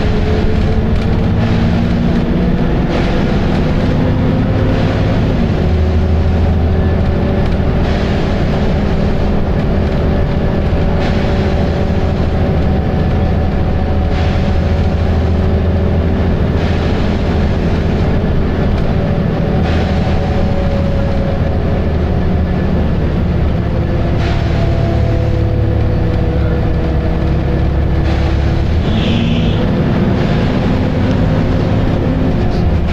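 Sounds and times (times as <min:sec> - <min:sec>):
bus diesel engine drone: 0:00.0 - 0:32.9
short rushes of noise: 0:28.0 - 0:31.2.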